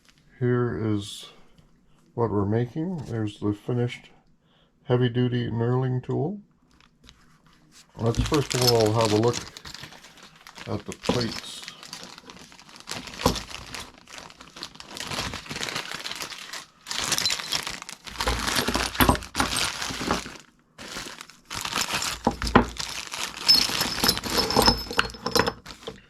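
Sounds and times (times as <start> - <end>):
packaging crinkling: 6.7 - 26.0.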